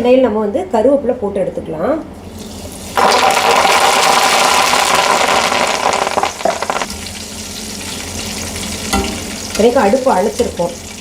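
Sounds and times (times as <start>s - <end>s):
leaves sizzling in hot oil: 2.3s - 11.0s.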